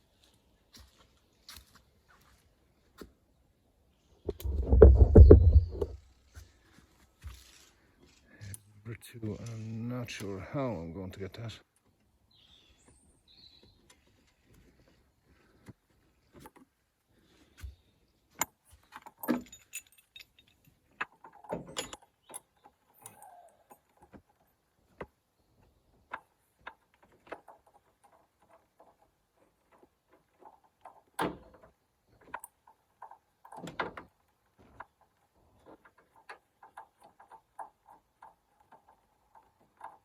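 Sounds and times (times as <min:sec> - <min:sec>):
metal hand tools clinking: 0:18.4 - 0:24.0
metal parts clattering: 0:18.4 - 0:24.0.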